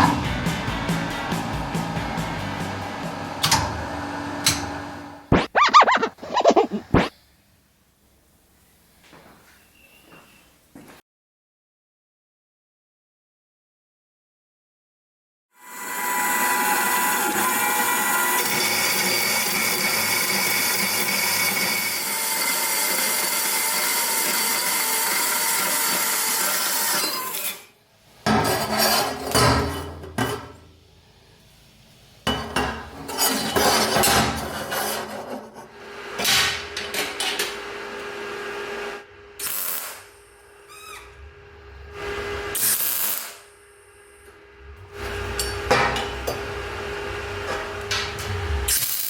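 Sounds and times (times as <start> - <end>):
power tool whining on steel: 15.6 - 27.7.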